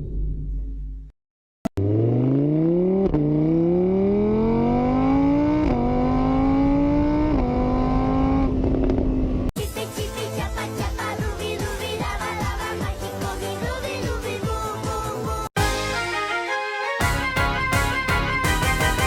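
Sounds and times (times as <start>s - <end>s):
car engine accelerating: 1.7s - 9.5s
music: 9.6s - 19.0s.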